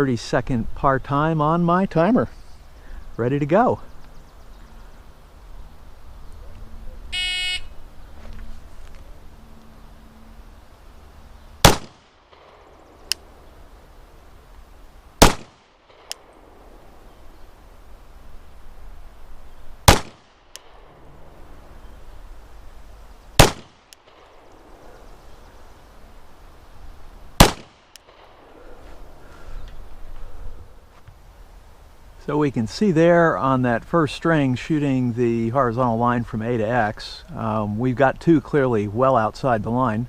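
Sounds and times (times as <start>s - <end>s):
pistol shots: 11.6s - 12.7s, 15.2s - 16.3s, 19.8s - 20.9s, 23.4s - 24.4s, 27.4s - 28.5s.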